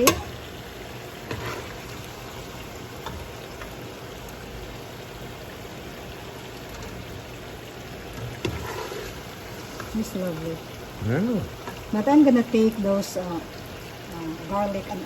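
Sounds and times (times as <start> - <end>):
meat sizzling in fat: 0.0 - 15.0.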